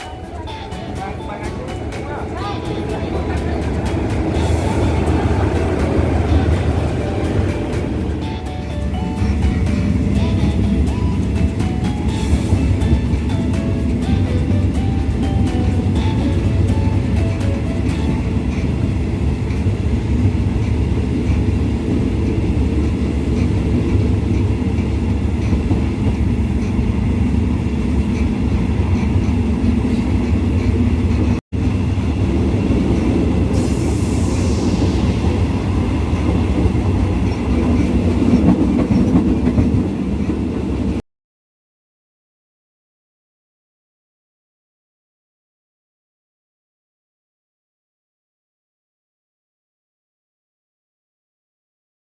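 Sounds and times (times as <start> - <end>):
train wheels rumbling on rails: 0.0 - 41.0.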